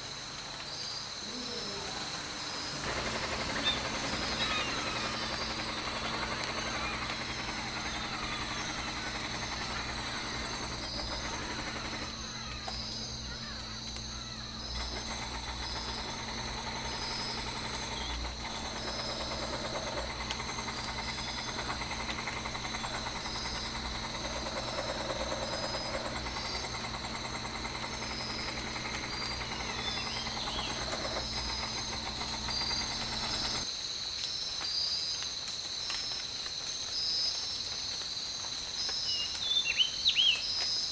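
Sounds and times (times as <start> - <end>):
high insect drone: 0.0 - 40.9
low motor-like hum: 1.2 - 33.7.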